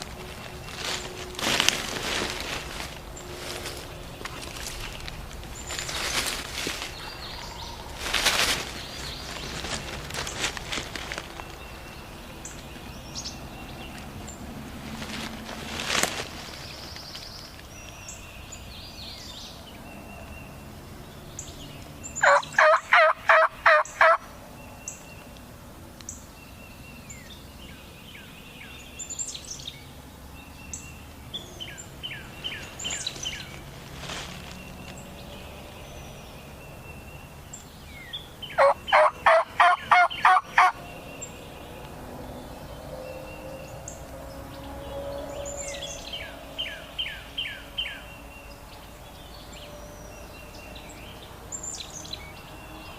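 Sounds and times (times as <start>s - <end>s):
small birds chirping: 0.0s - 52.9s
turkey yelps: 22.2s - 24.2s, 38.6s - 40.8s.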